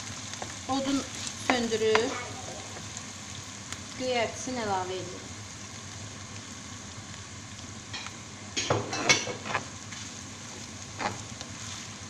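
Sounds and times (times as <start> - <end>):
pan sizzling faintly: 0.0 - 12.0
spoon scraping in frying pan: 8.8 - 10.1.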